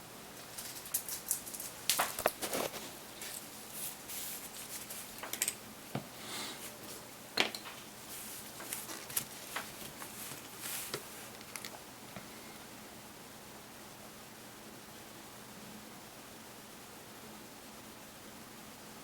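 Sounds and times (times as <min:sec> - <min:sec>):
small tools clicking and tapping: 0:05.2 - 0:05.6.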